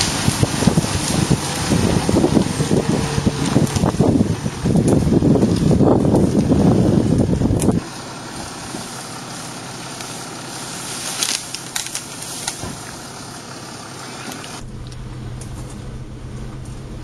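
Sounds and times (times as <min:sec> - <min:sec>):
wind buffeting microphone: 0:00.0 - 0:07.8, 0:14.6 - 0:17.0
scattered crackles and clicks: 0:09.9 - 0:13.1.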